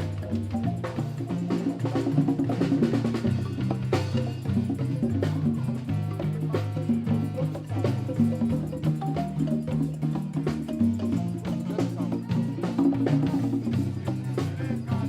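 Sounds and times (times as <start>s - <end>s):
drum kit playing: 0.0s - 15.0s
marimba playing quick notes: 0.0s - 15.0s.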